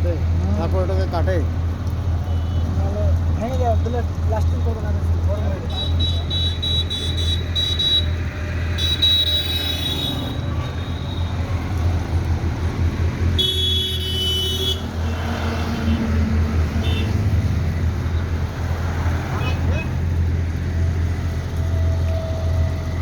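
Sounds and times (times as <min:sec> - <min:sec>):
heavy engine droning: 0:19.5 - 0:23.0.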